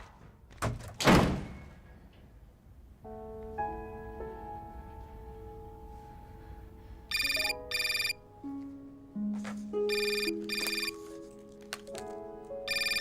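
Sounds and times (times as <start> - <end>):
soft piano music: 2.9 - 13.0
telephone ringing: 7.1 - 8.2, 9.9 - 11.0, 12.7 - 13.0.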